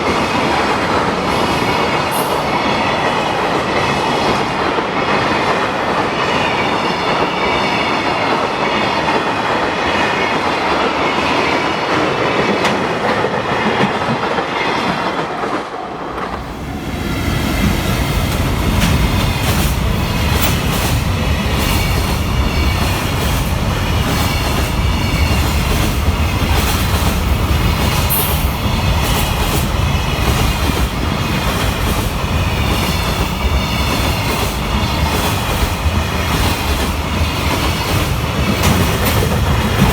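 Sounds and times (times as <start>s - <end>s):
train wheels clicking over rail joints: 12.6s - 39.9s.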